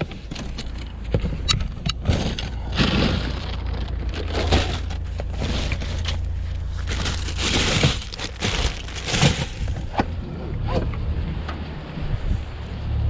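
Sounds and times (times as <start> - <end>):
steady low rumble: 0.0 - 13.0
scrap metal clattering and crashing: 2.0 - 9.9.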